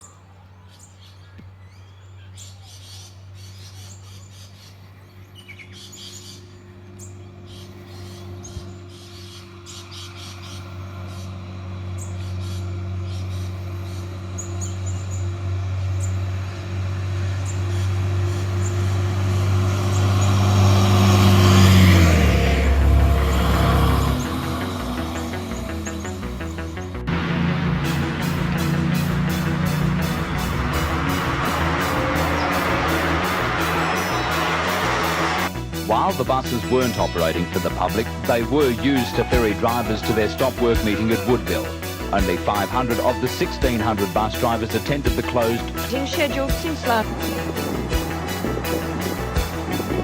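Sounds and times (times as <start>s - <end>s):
birds chirping: 0.0s - 50.0s
steady low hum: 4.2s - 36.6s
rushing noise: 15.4s - 39.6s, 41.8s - 50.0s.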